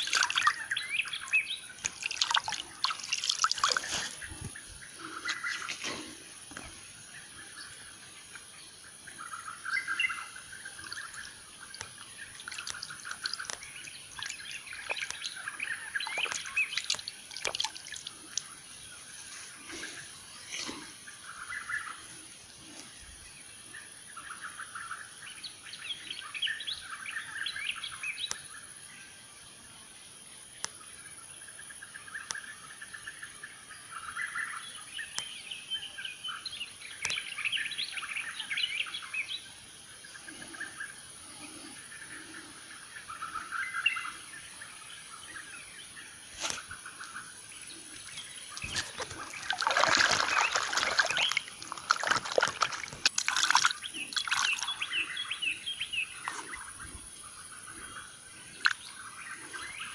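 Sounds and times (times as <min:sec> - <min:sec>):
crickets trilling: 0:00.0 - 0:59.9
songbirds chirping: 0:00.0 - 0:59.9.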